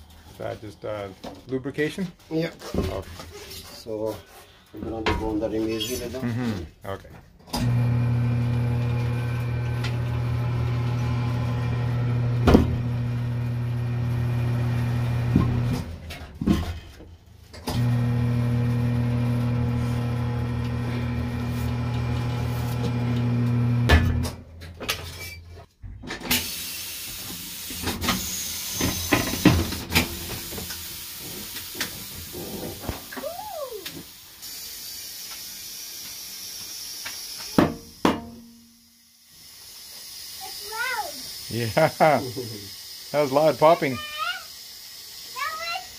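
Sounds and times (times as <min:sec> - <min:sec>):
electric motor humming: 0:07.6 - 0:15.9, 0:17.7 - 0:24.2
compressed air hissing into tire: 0:26.3 - 0:38.0, 0:38.7 - 0:45.9.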